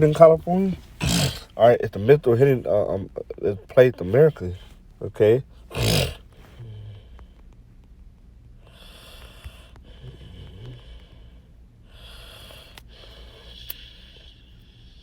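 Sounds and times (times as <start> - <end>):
faint low hum: 0.0 - 15.0
person breathing close: 0.1 - 1.7, 8.6 - 15.0.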